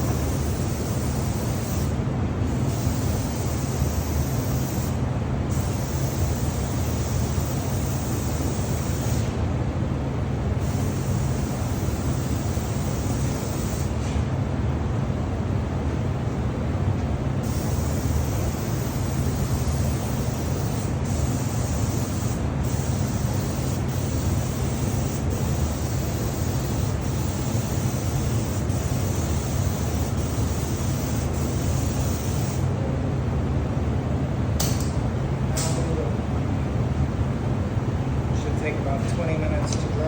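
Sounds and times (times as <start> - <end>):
spray equipment humming: 17.4 - 32.7
spray gun hissing: 17.8 - 32.6.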